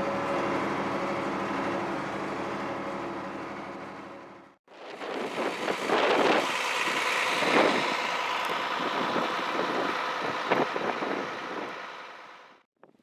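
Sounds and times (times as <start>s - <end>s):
wind buffeting microphone: 4.7s - 12.0s.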